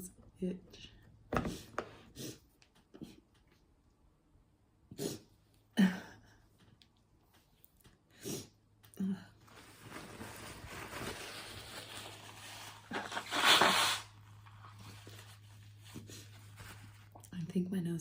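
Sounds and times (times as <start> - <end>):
person sniffing: 4.9 - 5.3.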